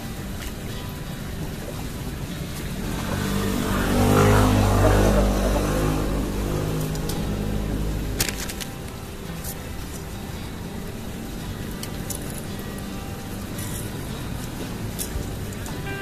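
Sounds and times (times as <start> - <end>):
vehicle passing by: 1.8 - 9.2.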